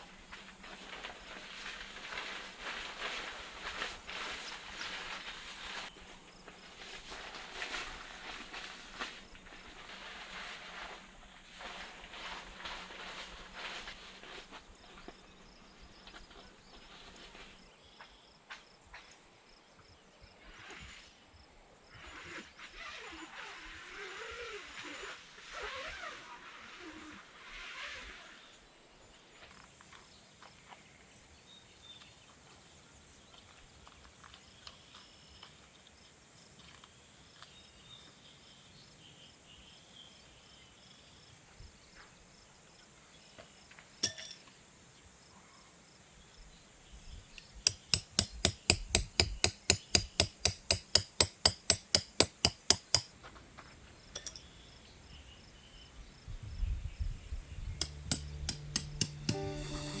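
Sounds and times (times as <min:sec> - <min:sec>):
sharp click: 0:47.4 - 0:53.1, 0:57.8 - 0:59.4
tent peg being hammered: 0:47.6 - 0:53.1, 0:54.2 - 0:54.4, 0:57.8 - 1:00.0.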